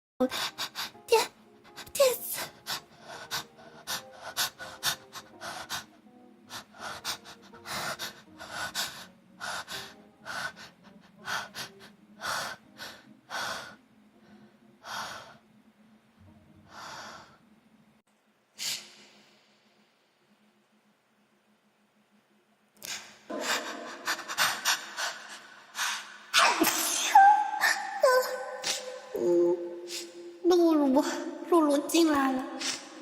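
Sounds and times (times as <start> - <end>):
sneeze: 26.4 - 27.2.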